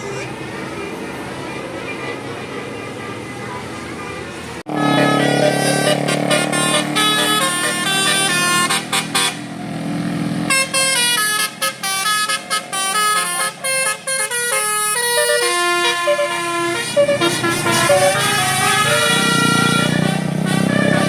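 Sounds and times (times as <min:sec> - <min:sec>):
musical air horn tune: 0:04.7 - 0:09.4, 0:10.5 - 0:21.0.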